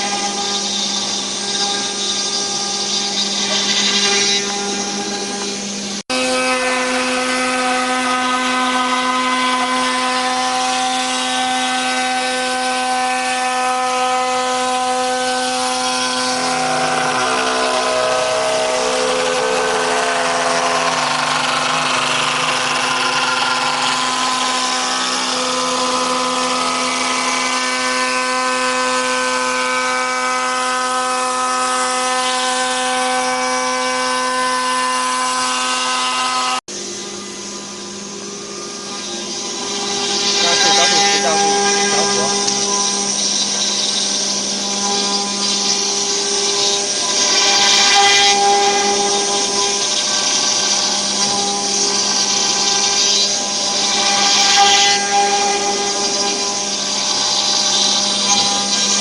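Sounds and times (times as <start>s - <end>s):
router spindle whine: 0.0s - 59.0s
hiss of cutting wood: 38.8s - 42.8s.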